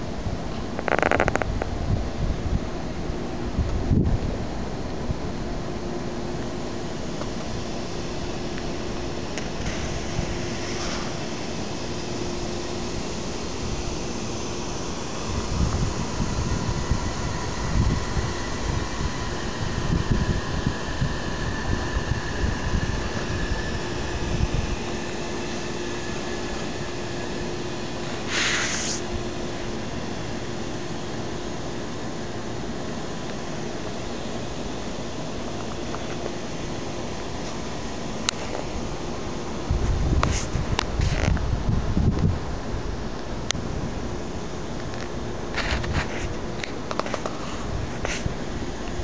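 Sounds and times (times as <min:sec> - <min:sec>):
constant low hum: 0:00.0 - 0:49.0
droning rumble from sky: 0:00.0 - 0:49.0
brief hiss: 0:09.6 - 0:11.2, 0:28.1 - 0:29.1.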